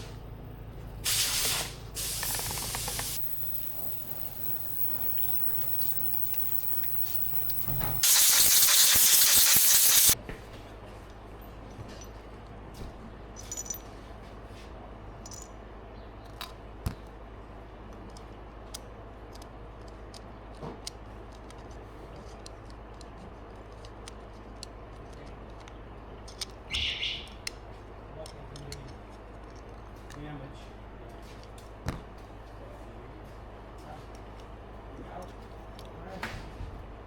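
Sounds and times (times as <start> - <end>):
low hum: 1.7 - 10.2
tools clicking and tapping: 2.0 - 10.2.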